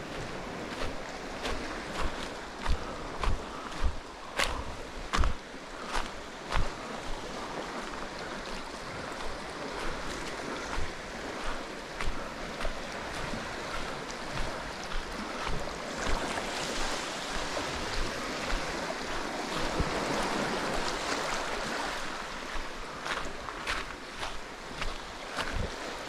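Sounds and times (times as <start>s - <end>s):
wind thumping on microphone: 0.0s - 8.0s, 17.3s - 20.9s, 23.0s - 25.8s
water rushing past boat: 0.0s - 26.0s.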